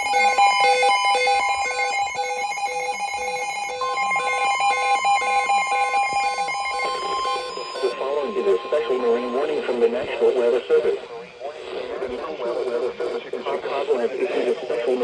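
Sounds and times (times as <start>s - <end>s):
repeating electronic beeps: 0.0s - 10.6s
higher steady tone: 0.9s - 10.3s.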